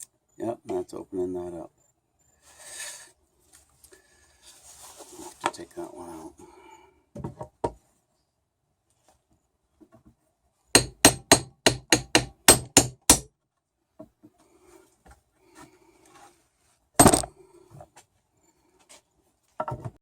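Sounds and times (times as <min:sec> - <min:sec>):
hammer tapping on wood: 0:10.8 - 0:13.3.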